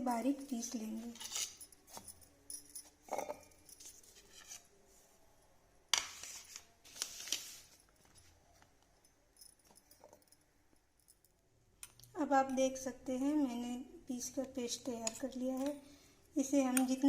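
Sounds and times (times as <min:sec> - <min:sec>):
kitchen utensils clinking and scraping: 0:00.0 - 0:04.7.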